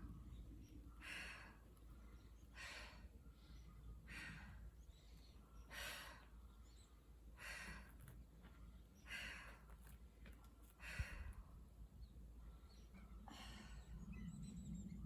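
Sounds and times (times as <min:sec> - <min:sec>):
woman breathing hard: 0:01.0 - 0:04.9, 0:07.4 - 0:08.1, 0:09.1 - 0:09.7, 0:10.8 - 0:11.5, 0:13.2 - 0:14.0.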